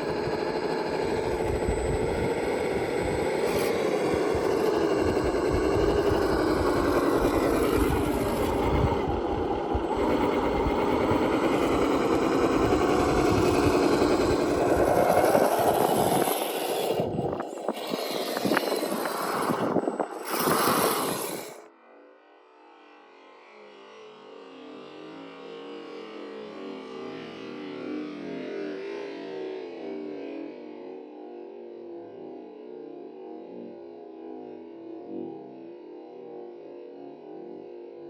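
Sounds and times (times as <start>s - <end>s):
electric motor whining: 0.0s - 21.6s.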